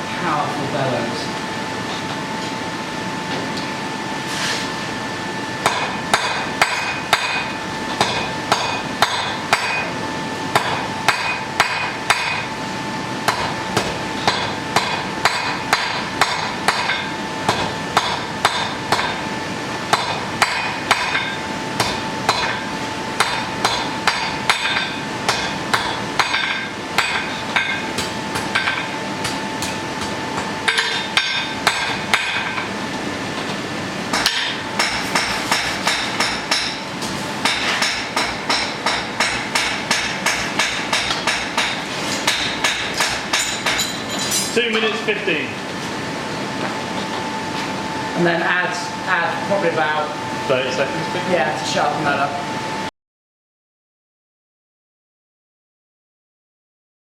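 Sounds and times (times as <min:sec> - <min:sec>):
steady hum: 0:00.0 - 0:52.9
hammer ringing on anvil: 0:05.6 - 0:09.9, 0:10.6 - 0:12.5, 0:19.9 - 0:29.8, 0:30.6 - 0:32.6, 0:37.4 - 0:45.0.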